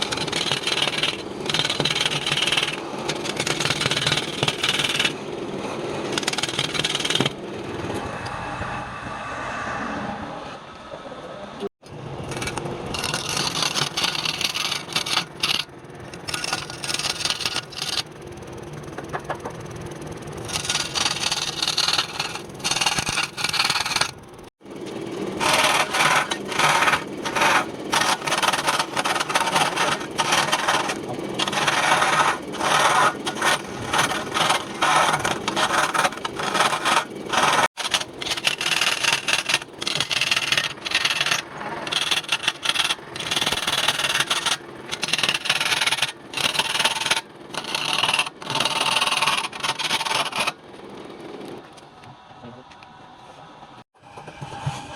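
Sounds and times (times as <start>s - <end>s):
lathe tool scraping wood: 0.0s - 8.0s, 12.2s - 18.2s, 20.4s - 24.5s, 25.3s - 50.6s.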